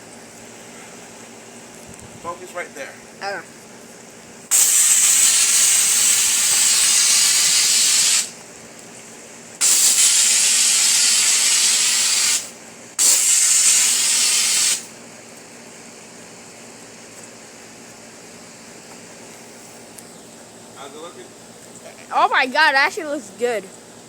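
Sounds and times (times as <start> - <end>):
steady low hum: 0.0 - 7.5, 14.8 - 24.0
pressure washer spray hissing: 4.5 - 8.4, 9.6 - 15.0.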